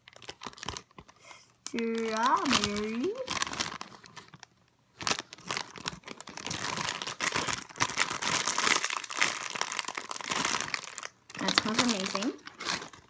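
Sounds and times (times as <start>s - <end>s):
squishy toys crinkling and rustling: 0.0s - 13.0s.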